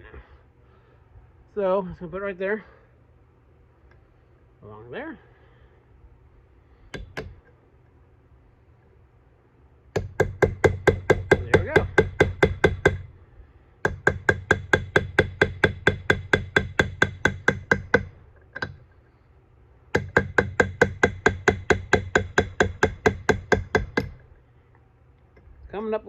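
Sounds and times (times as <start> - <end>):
hammer tapping steel punch: 6.9 - 7.5, 9.9 - 13.0, 13.8 - 18.8, 19.9 - 24.2.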